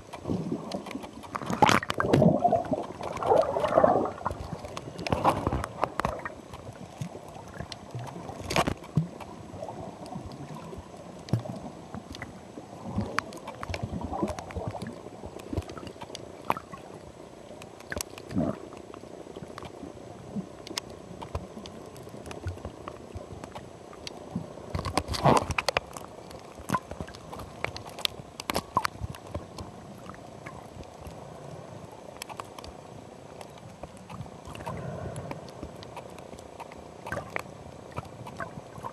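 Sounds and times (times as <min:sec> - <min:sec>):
muffled gurgling water: 0:00.0 - 0:38.9
clicks and pops: 0:00.1 - 0:06.3.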